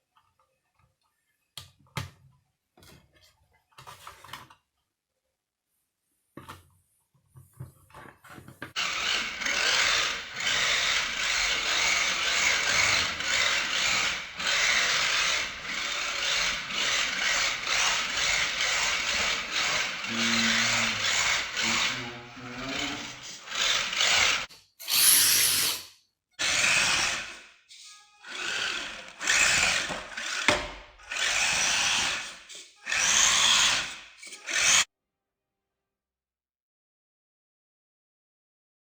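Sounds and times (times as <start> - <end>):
small electric motor whirring: 8.7 - 25.8, 26.4 - 34.9.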